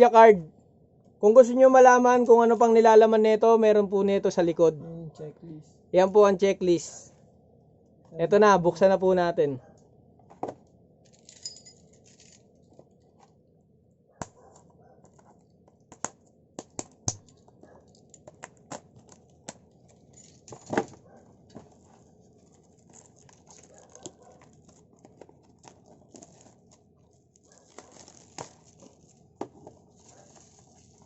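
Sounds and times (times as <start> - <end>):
cardboard and plastic tearing: 14.6 - 21.0, 21.6 - 31.0
wrapping rustling: 17.2 - 31.0.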